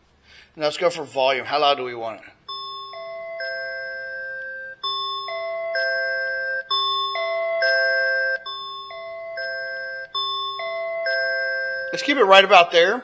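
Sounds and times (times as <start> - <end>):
three-note doorbell chime: 2.5 - 12.4.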